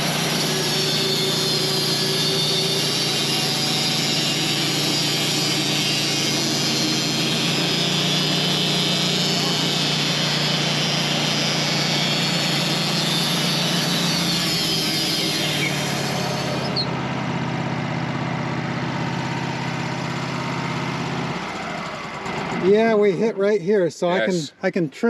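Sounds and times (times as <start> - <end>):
saw blade hissing through log: 0.0 - 16.9
sawmill machine drone: 0.0 - 24.8.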